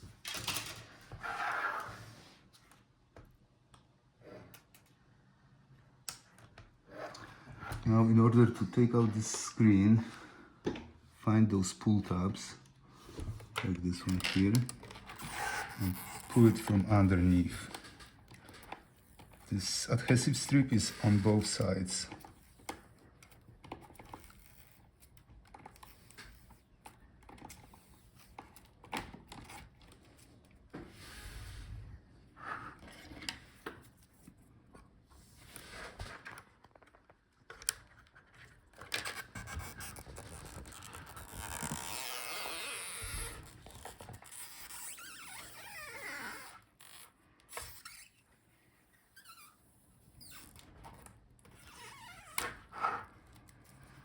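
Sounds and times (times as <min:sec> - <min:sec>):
adhesive strips scraping and rubbing: 0:14.0 - 0:17.6, 0:37.9 - 0:48.2.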